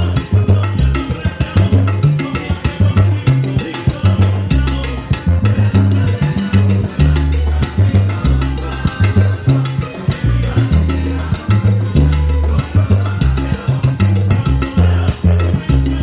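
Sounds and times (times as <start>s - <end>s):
rhythmic percussion: 0.0s - 16.0s
salsa band bass line: 0.0s - 16.0s.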